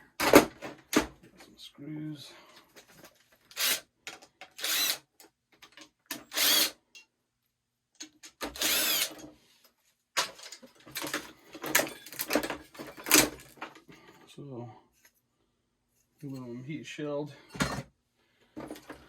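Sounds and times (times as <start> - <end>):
clicks and rattles of parts: 0.2 - 1.5, 2.6 - 7.1, 8.0 - 9.4, 10.2 - 14.2, 18.5 - 19.0
power drill running: 3.6 - 3.8, 4.6 - 5.0, 6.2 - 6.8, 8.4 - 9.3.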